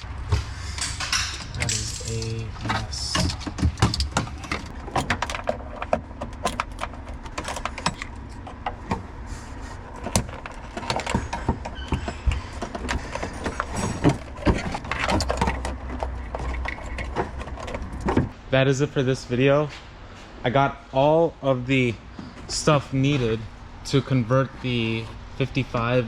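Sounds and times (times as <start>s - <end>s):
tools clicking and rattling: 0.7s - 9.0s, 10.0s - 18.3s.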